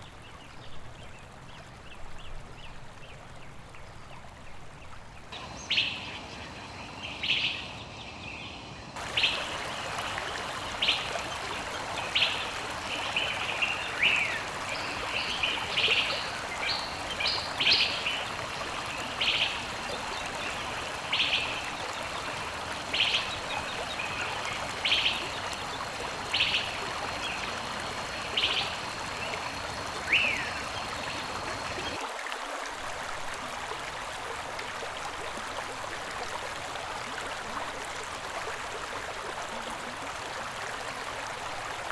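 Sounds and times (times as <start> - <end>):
bird calling: 9.0 - 32.0
water flowing: 9.0 - 41.9.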